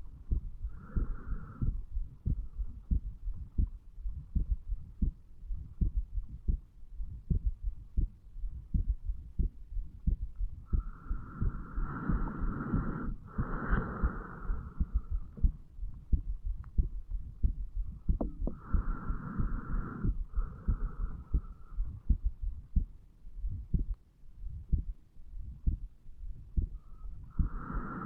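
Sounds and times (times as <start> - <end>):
heartbeat thumps: 0.0 - 28.0
breathing hiss: 10.7 - 15.3, 18.5 - 21.8, 27.3 - 28.0.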